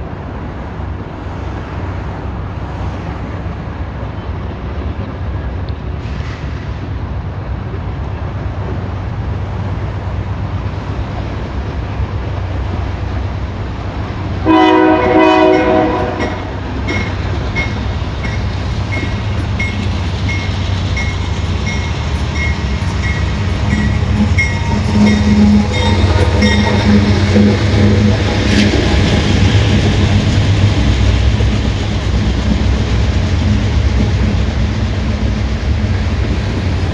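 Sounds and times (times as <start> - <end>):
low rumble of train: 0.0 - 36.9
locomotive air horn blast: 14.4 - 16.6, 20.5 - 29.1.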